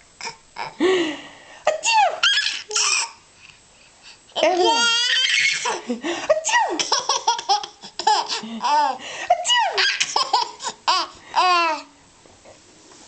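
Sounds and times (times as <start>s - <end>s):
baby laughing: 4.6s - 11.9s.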